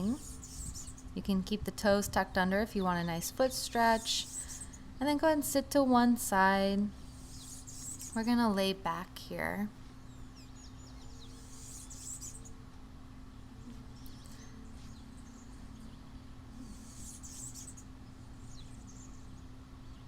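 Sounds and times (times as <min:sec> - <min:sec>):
small birds chirping: 0:00.0 - 0:01.2, 0:02.6 - 0:05.3, 0:06.9 - 0:08.5, 0:09.8 - 0:20.0
faint low hum: 0:00.0 - 0:20.0.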